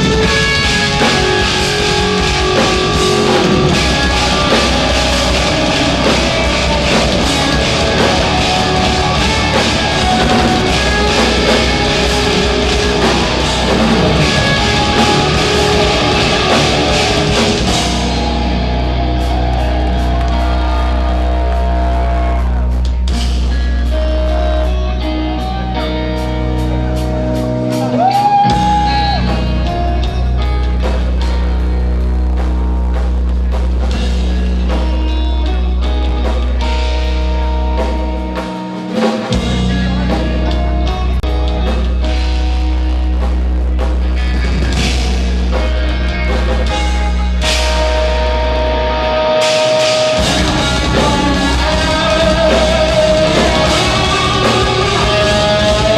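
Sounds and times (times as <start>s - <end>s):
clean guitar lines: 0.0s - 55.9s
progressive metal played live: 0.0s - 55.9s.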